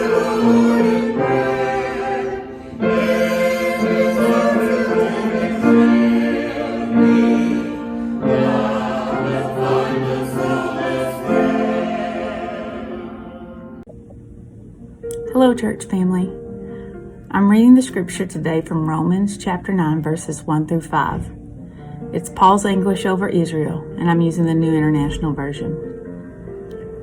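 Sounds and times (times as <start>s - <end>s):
choir singing a hymn: 0.0s - 13.8s.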